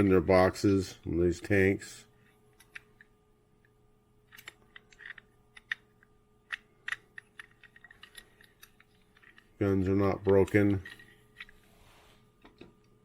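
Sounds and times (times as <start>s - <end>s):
metal toys clicking: 4.3s - 5.8s, 6.5s - 9.5s.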